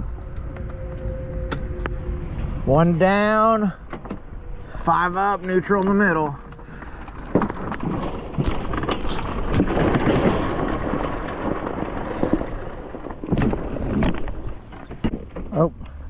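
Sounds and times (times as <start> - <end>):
wind rumble on microphone: 0.0 - 16.0
kick-starter knocks and clunks: 3.9 - 4.3, 6.5 - 16.0.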